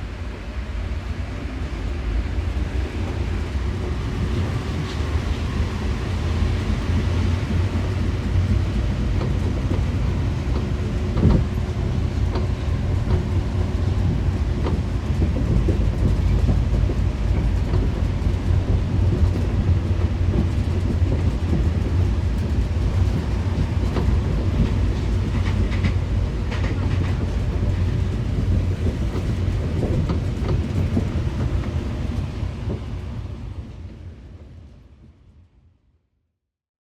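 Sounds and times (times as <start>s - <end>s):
train cabin rumble: 0.0s - 35.2s.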